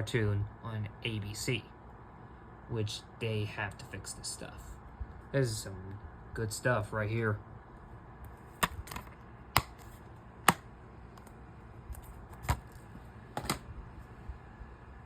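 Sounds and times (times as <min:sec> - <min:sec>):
plastic case clicking and snapping: 0:08.6 - 0:09.9, 0:13.4 - 0:13.6.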